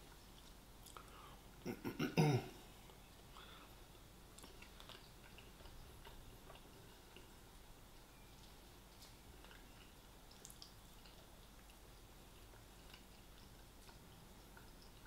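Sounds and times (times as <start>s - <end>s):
chewing clicks: 0.1s - 1.2s, 3.9s - 7.3s, 8.0s - 15.0s
low voiced grunt: 1.7s - 2.6s
man clearing throat: 1.7s - 2.6s.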